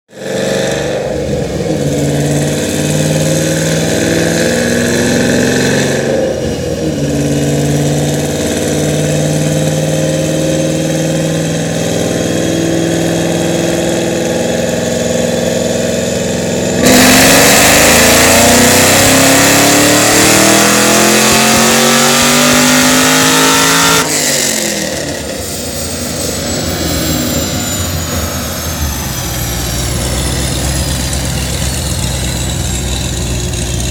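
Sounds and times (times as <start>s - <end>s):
car engine revving: 0.1s - 33.9s.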